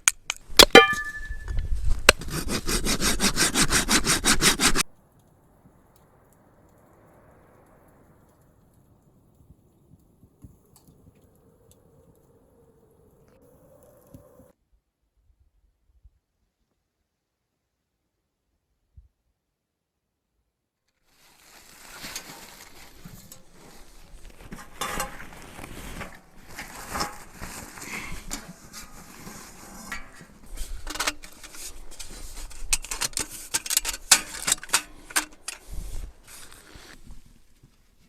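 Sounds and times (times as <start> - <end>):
clatter of objects being handled: 21.2 - 37.8.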